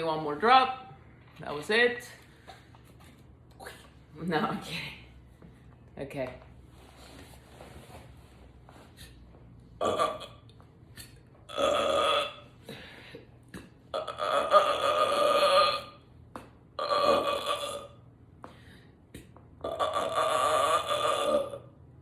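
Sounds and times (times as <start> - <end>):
woman burping: 9.8 - 10.4, 11.5 - 12.8, 13.9 - 16.0, 16.8 - 18.0, 19.6 - 21.7.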